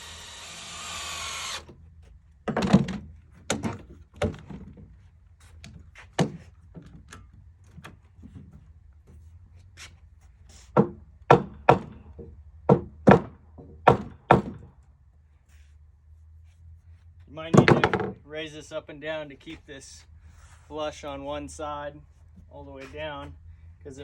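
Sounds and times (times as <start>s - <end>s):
knocks on timber: 12.7s - 14.6s.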